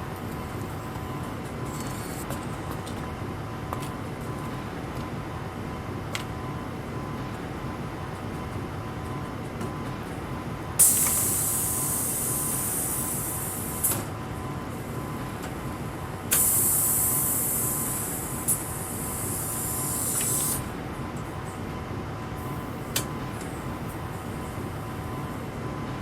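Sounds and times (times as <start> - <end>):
pressurized air hissing: 10.8 - 13.7, 18.8 - 20.7.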